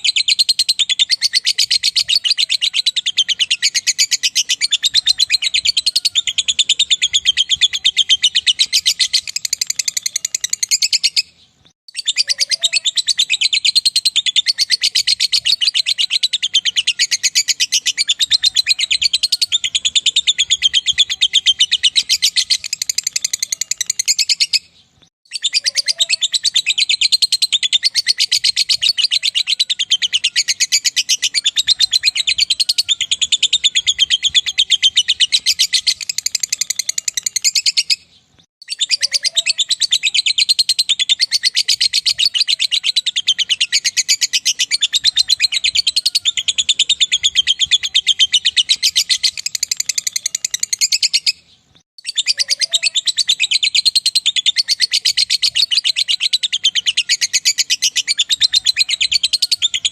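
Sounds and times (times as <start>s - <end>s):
lovebird chattering chirps: 0.0s - 24.7s, 25.3s - 51.4s.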